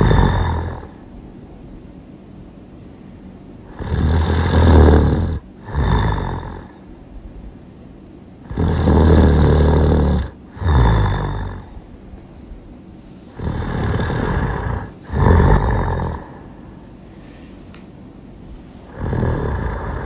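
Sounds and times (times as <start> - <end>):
loud snoring: 0.0 - 1.0, 3.7 - 6.8, 8.4 - 11.8, 13.3 - 16.6, 18.8 - 20.0.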